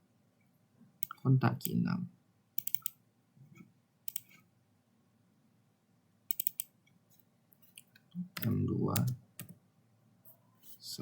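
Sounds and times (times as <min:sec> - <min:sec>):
computer mouse clicks: 0:02.6 - 0:03.0, 0:04.1 - 0:04.4, 0:06.3 - 0:06.7, 0:07.6 - 0:09.6.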